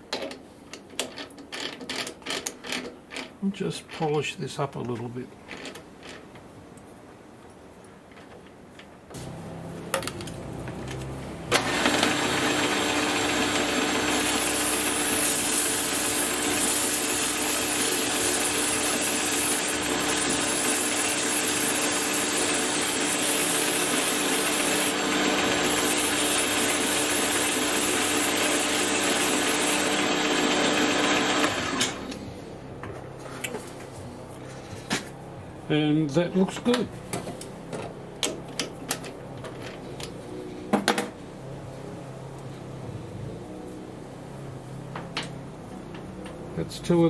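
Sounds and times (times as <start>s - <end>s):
machine motor running: 9.2s - 32.6s
abrasive polishing on steel: 12.6s - 31.5s.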